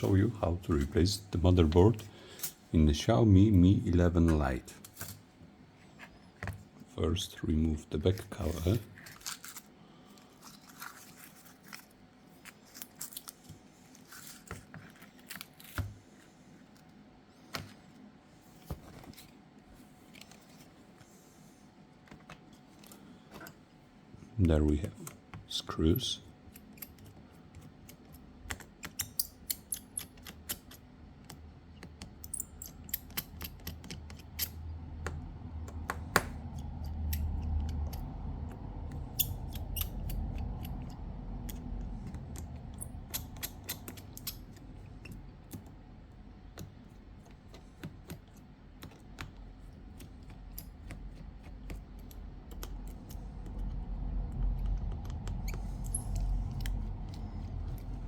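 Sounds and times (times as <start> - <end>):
low hum: 34.5 - 47.2, 51.6 - 58.0.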